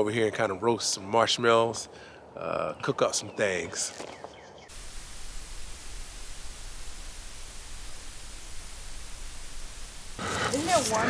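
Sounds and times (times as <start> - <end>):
steady static hiss: 4.7 - 11.0.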